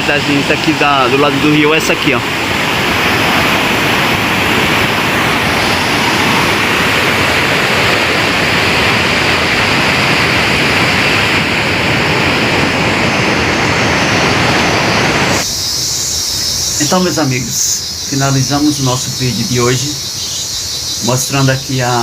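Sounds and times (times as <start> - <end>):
river water rushing over rapids: 0.1 - 15.5.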